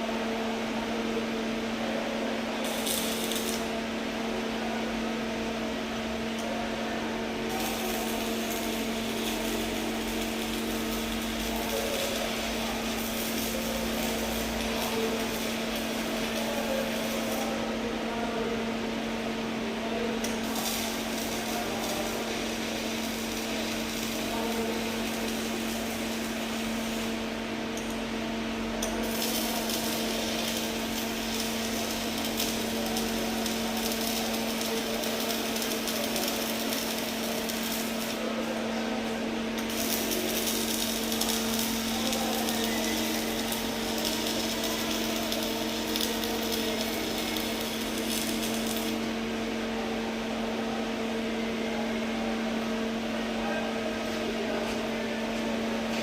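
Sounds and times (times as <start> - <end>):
steady electrical hum: 0.0 - 56.0
welding arc crackling and hissing: 2.4 - 3.9, 7.4 - 18.0, 20.1 - 49.2.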